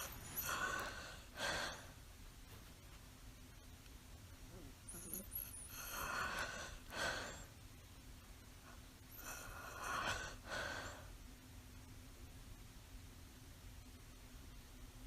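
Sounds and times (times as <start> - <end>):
sleeping person breathing: 0.0 - 2.0, 4.6 - 7.6, 8.6 - 11.2.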